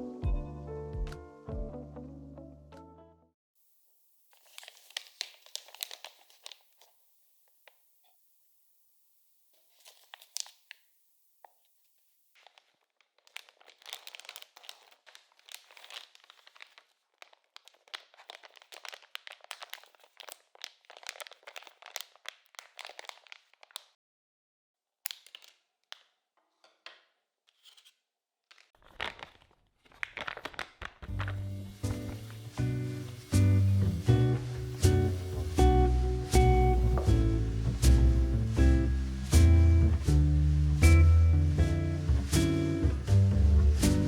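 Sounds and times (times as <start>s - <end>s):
packaging crinkling and tearing: 4.3s - 7.0s, 9.6s - 11.6s, 12.3s - 24.0s, 25.1s - 26.2s, 28.4s - 44.0s.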